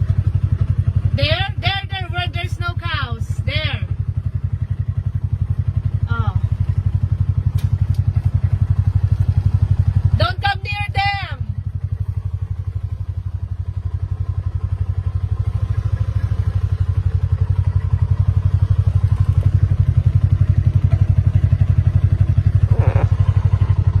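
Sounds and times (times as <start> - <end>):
engine chugging: 0.0 - 24.0.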